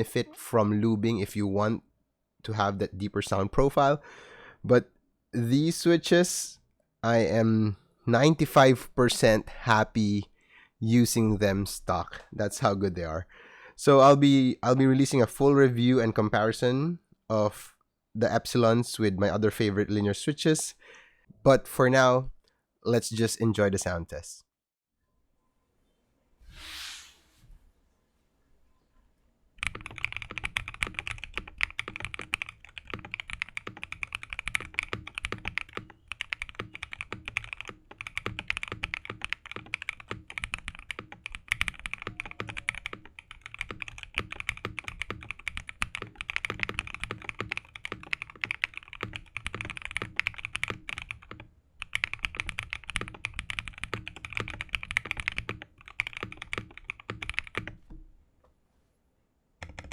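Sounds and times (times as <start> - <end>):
fast mechanical keyboard typing: 29.6 - 57.8, 59.6 - 59.9.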